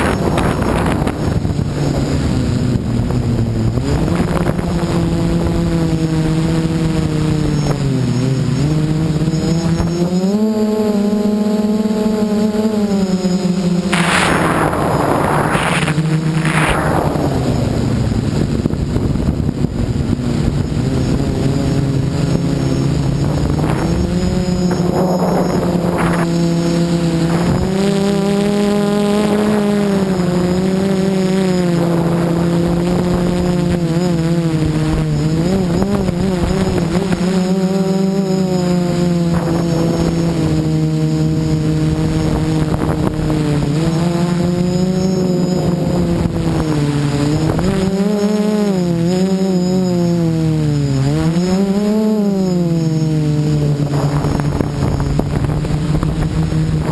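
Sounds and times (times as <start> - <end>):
quadcopter motors droning: 0.0 - 56.9
short rushes of noise: 13.8 - 19.0.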